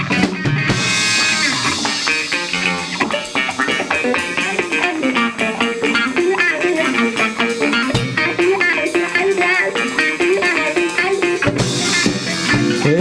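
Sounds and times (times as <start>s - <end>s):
bass guitar: 0.0s - 13.0s
electric guitar riff: 0.0s - 13.0s.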